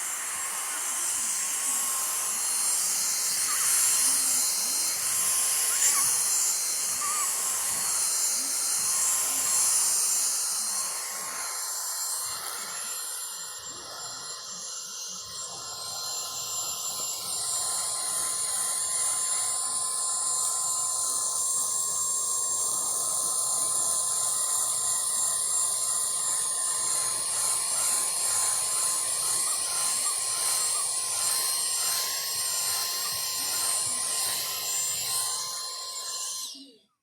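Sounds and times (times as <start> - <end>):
vacuum cleaner running: 0.0 - 36.8.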